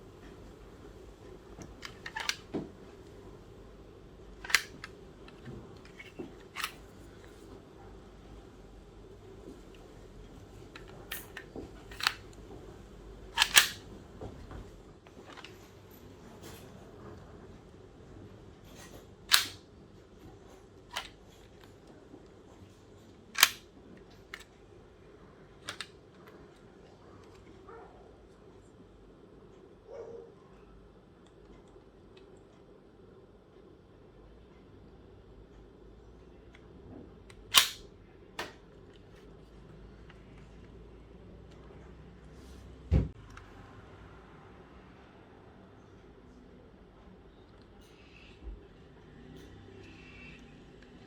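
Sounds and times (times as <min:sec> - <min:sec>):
plastic toy clicks: 0:01.8 - 0:02.4, 0:04.4 - 0:04.9, 0:10.8 - 0:12.2, 0:13.4 - 0:13.8, 0:19.3 - 0:19.6, 0:23.4 - 0:23.6, 0:25.7 - 0:25.9, 0:37.5 - 0:37.8.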